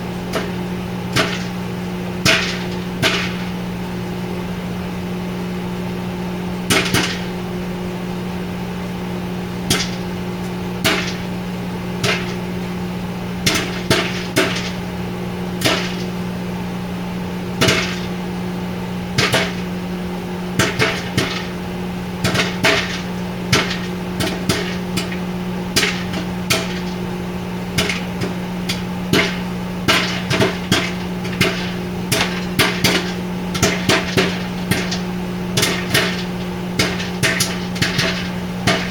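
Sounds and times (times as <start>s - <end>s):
microwave oven humming: 0.0s - 38.9s
popcorn kernels popping: 0.3s - 3.6s, 6.7s - 7.4s, 9.7s - 10.1s, 10.8s - 11.4s, 12.0s - 12.7s, 13.4s - 15.0s, 15.6s - 16.2s, 17.6s - 18.3s, 19.1s - 19.8s, 20.6s - 38.9s.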